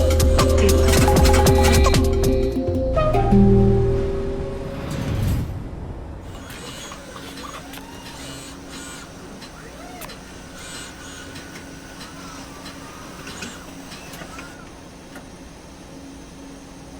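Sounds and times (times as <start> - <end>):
steady machine hum: 0.0 - 16.9
loud hit: 4.2 - 6.4
clicks: 6.3 - 15.3
robot motor whines: 6.3 - 15.4.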